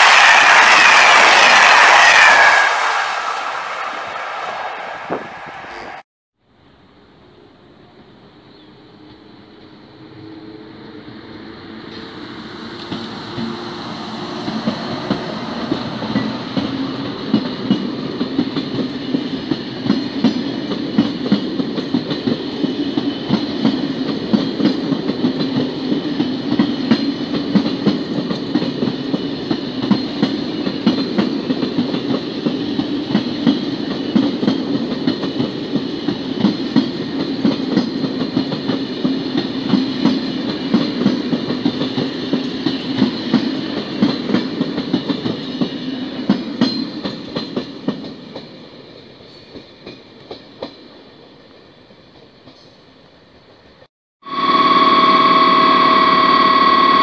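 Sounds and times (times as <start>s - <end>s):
train wheels clattering over rails: 11.9s - 48.6s.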